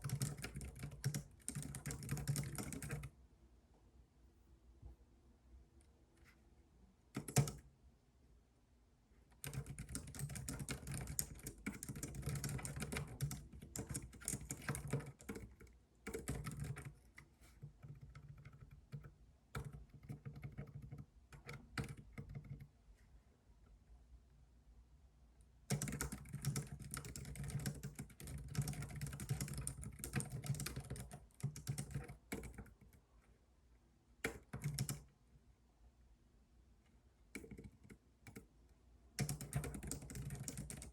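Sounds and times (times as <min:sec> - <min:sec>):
computer keyboard typing: 0:00.0 - 0:03.1, 0:07.2 - 0:07.6, 0:09.4 - 0:22.7, 0:25.7 - 0:33.0, 0:34.2 - 0:35.1, 0:37.3 - 0:38.5, 0:39.2 - 0:40.9.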